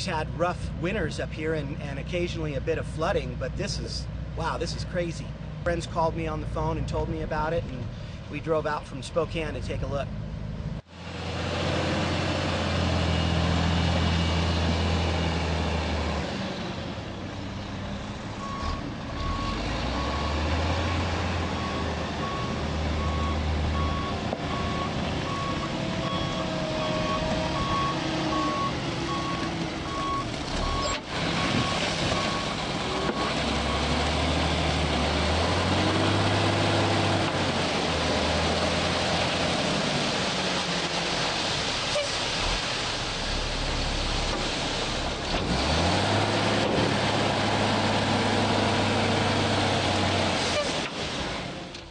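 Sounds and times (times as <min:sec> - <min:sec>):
heavy diesel engine working: 0:10.8 - 0:40.5.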